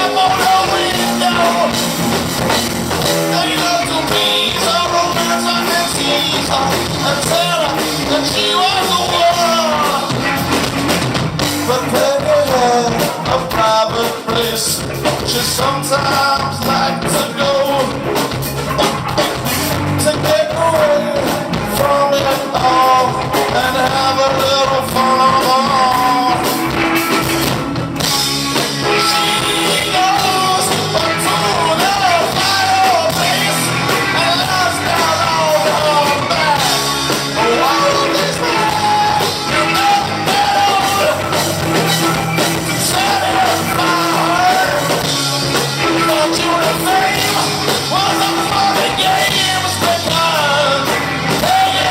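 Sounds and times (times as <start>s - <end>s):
person singing: 0.0s - 10.6s, 11.4s - 27.7s, 28.6s - 51.9s
rock band playing: 0.0s - 51.9s
steady drum beat: 0.0s - 51.9s.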